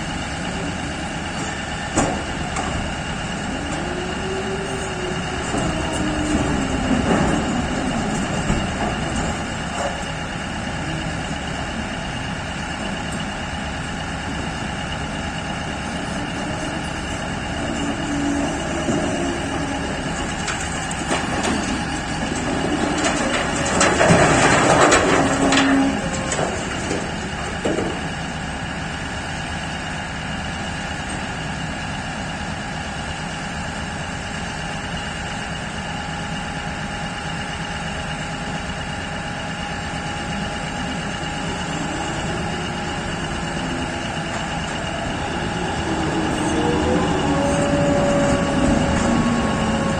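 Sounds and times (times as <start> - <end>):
heavy machinery whining tones: 0.0 - 29.3, 39.8 - 49.9
low machinery rumble: 0.0 - 49.9
loud burst of machinery noise: 40.3 - 49.9.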